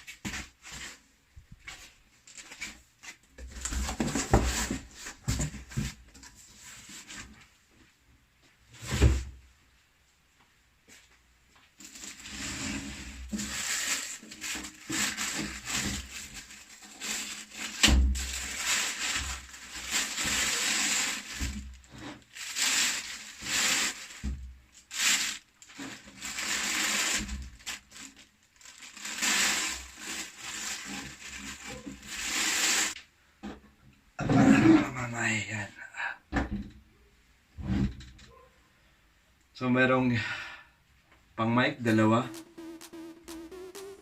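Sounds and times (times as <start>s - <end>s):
plastic packaging crinkling: 11.8s - 12.6s, 13.2s - 33.0s.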